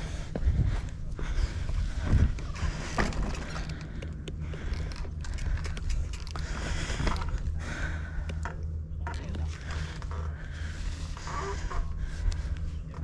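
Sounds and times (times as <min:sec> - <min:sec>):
mountain bike rumbling on dirt: 0:01.2 - 0:07.8
bike rattles and knocks: 0:01.4 - 0:07.5.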